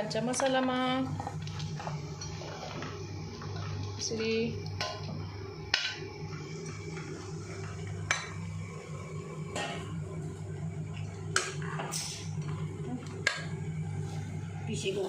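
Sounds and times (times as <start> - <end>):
steady low hum: 0.0 - 15.0
utensils clinking against a pot: 1.2 - 2.9.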